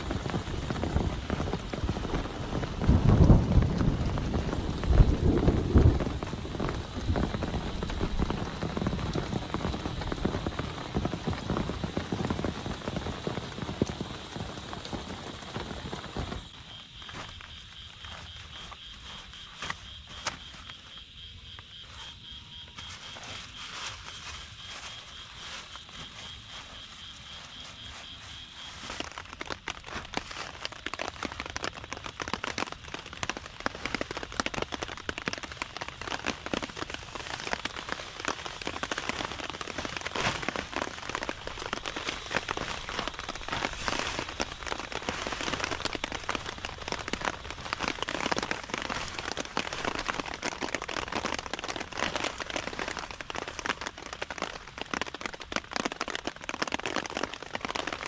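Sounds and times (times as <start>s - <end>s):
heavy rain falling: 0.0s - 16.6s, 30.1s - 58.0s.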